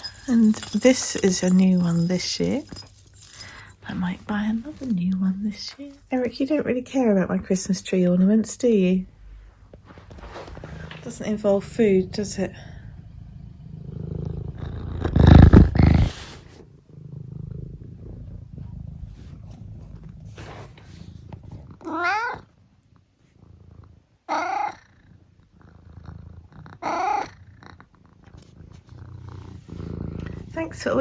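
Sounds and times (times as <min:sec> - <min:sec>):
cat purring: 0:00.0 - 0:31.0
cat meowing: 0:21.8 - 0:22.5, 0:24.3 - 0:24.8, 0:26.8 - 0:27.4.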